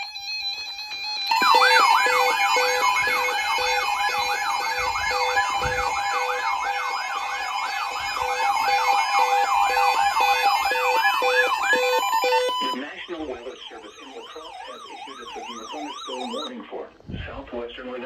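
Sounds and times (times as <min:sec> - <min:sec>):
electronic siren yelping: 0:00.0 - 0:16.6
regular beep: 0:00.0 - 0:16.6
steady tone: 0:01.2 - 0:16.4.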